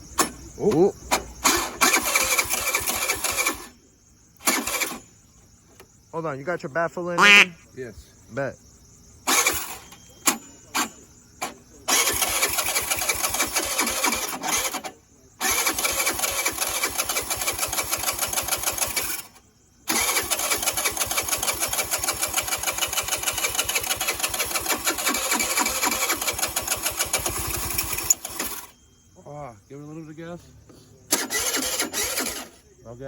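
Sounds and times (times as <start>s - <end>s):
electric starter cranking engine: 0.2s - 3.8s, 4.4s - 5.1s, 9.2s - 28.8s, 31.1s - 32.6s.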